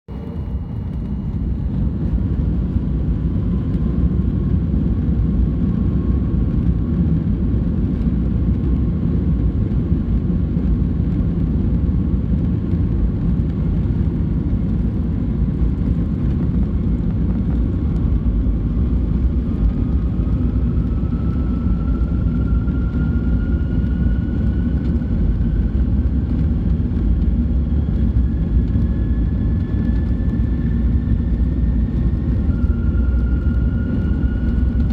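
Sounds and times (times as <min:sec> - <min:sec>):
faint rising jet whine: 0:00.1 - 0:04.1
jet engines rumbling: 0:00.1 - 0:34.9.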